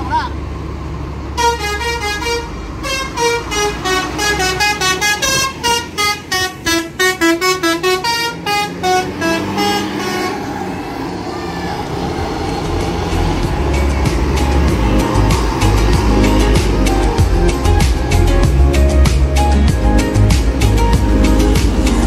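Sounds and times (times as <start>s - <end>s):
engine rumble: 0.0s - 22.0s
road noise: 0.0s - 22.0s
multi-tone bus horn tune: 1.3s - 11.4s.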